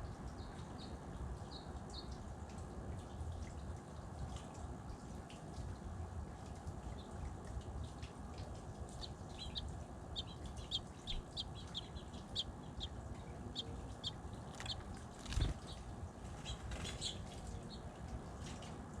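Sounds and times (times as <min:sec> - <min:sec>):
low background noise: 0:00.0 - 0:19.0
birds chirping: 0:08.8 - 0:18.7.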